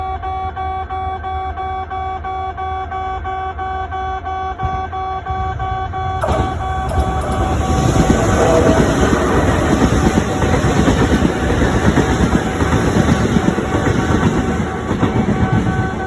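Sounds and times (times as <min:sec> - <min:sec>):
train arriving: 0:06.2 - 0:16.0.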